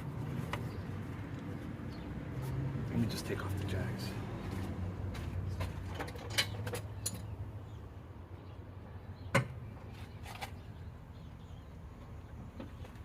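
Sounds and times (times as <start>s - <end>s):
metal jacks clinking and knocking: 5.6s - 7.3s.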